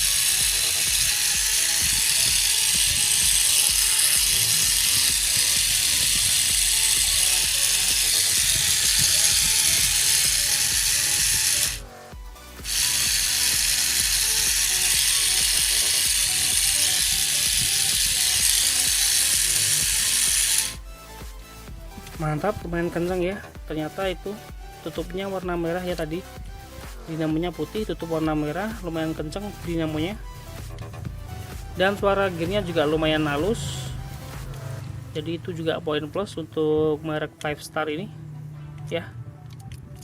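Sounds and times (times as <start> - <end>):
toy car motor whirring: 0.0 - 11.9, 12.6 - 20.8.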